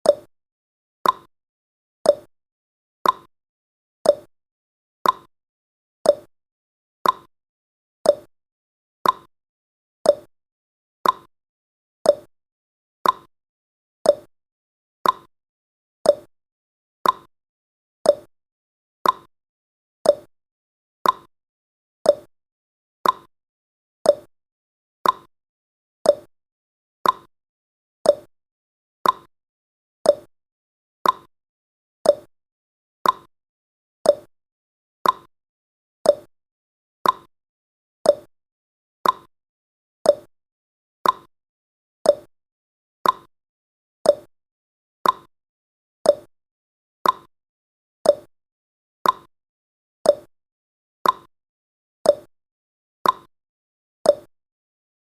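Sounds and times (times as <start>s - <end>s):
clock ticking: 29.0s - 29.3s, 31.0s - 31.3s, 35.0s - 35.3s, 37.0s - 37.3s, 39.0s - 39.3s, 41.0s - 41.3s, 43.0s - 43.3s, 45.0s - 45.3s, 47.0s - 47.3s, 49.0s - 49.3s.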